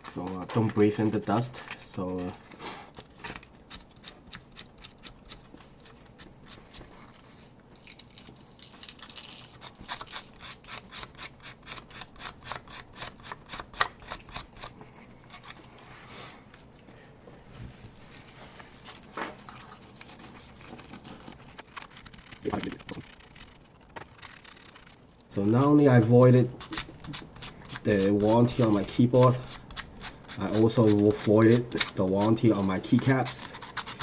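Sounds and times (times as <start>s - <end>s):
sandpaper scratching on plastic: 9.1s - 16.2s, 21.1s - 34.0s.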